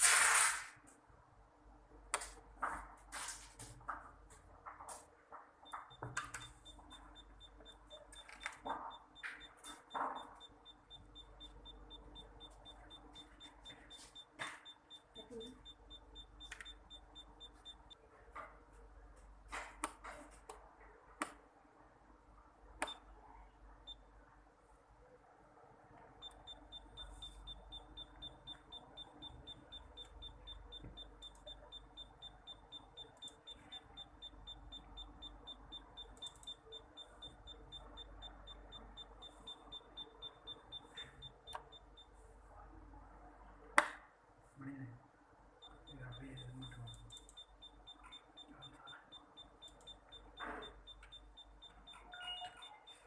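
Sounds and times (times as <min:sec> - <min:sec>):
insulation tester buzzer beeping: 0:05.6 - 0:18.0, 0:26.2 - 0:42.2, 0:45.6 - 0:53.0.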